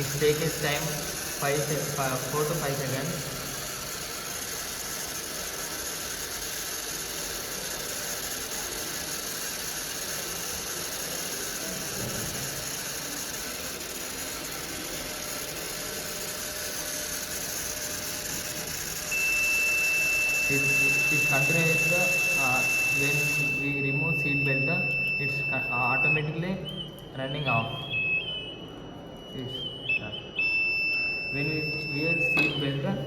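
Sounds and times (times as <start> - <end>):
small motor running with rattle: 0.0 - 23.6.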